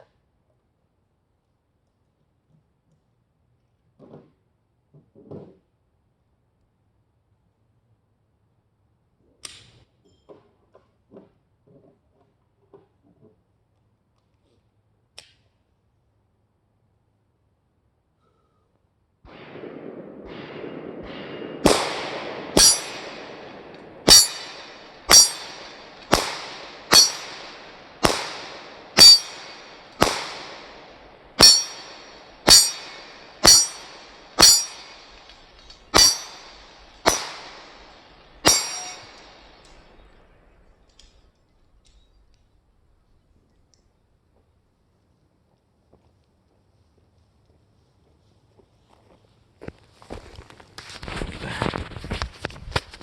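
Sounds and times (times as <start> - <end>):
pistol shots with echo: 19.3 - 40.3.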